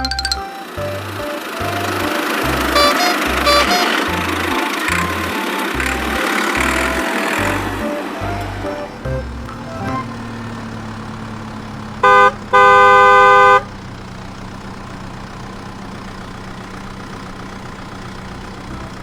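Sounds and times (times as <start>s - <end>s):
cartoon horn honking: 0.0s - 10.3s, 12.0s - 13.7s
low engine hum: 0.0s - 19.0s.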